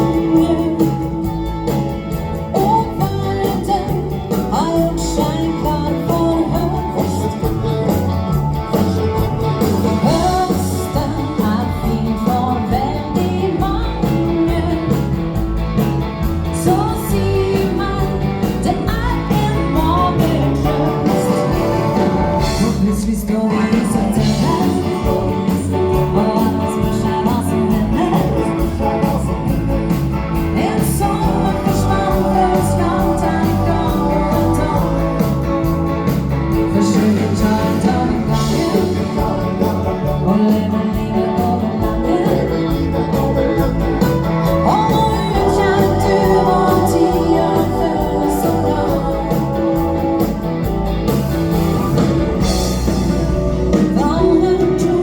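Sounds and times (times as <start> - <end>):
person singing: 0.0 - 51.3, 52.4 - 55.0
live dance band playing: 0.0 - 55.0.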